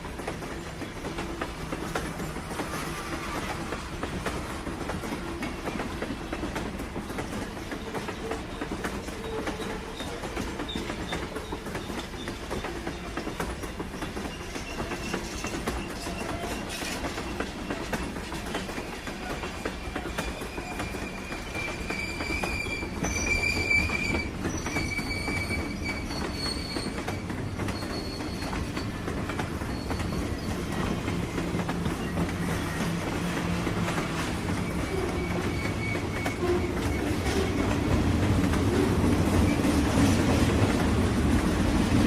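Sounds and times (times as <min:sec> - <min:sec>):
train rumbling on rails: 0:00.0 - 0:42.0
wheels squealing on rails: 0:00.0 - 0:42.0.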